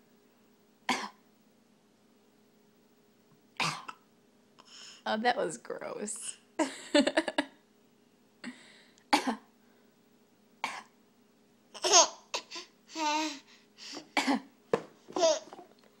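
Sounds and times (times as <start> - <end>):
baby fake coughing: 0.9 - 1.2, 3.6 - 4.1, 10.6 - 11.0, 11.8 - 13.2
laughter: 6.6 - 7.6.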